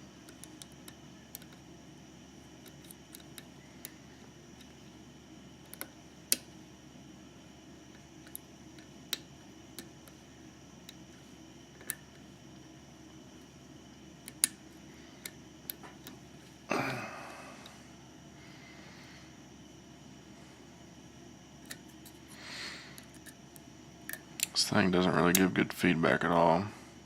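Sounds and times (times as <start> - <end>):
lock pick clicking on pins: 0.2 - 1.6, 14.2 - 14.6.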